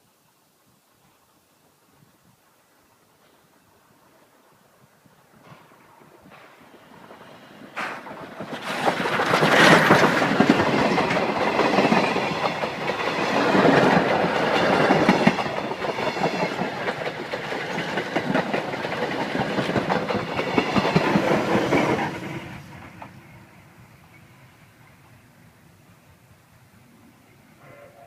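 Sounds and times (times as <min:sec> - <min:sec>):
train wheels clacking over rail joints: 0:05.4 - 0:23.2.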